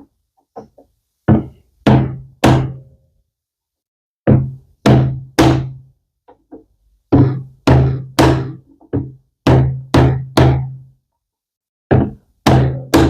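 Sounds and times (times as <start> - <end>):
hammer striking wood block: 0.6 - 3.0, 4.3 - 10.9, 11.9 - 13.0.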